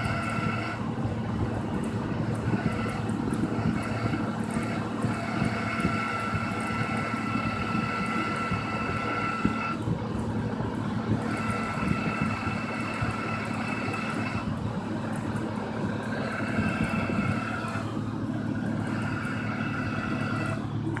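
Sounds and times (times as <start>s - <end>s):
ac compressor whine: 0.0s - 21.0s
car engine humming: 0.0s - 21.0s.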